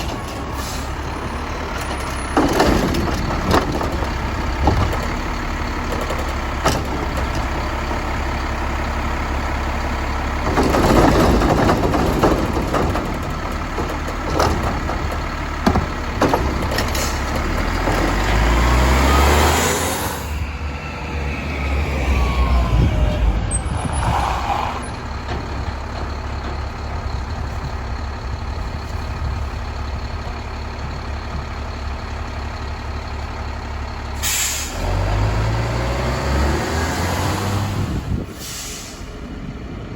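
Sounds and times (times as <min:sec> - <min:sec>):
diesel engine running: 0:00.0 - 0:39.9
loud clatter: 0:01.7 - 0:07.9, 0:10.4 - 0:18.9
metal clunks: 0:10.4 - 0:18.8, 0:25.0 - 0:28.1
air brake hiss: 0:34.2 - 0:34.8, 0:38.3 - 0:39.2.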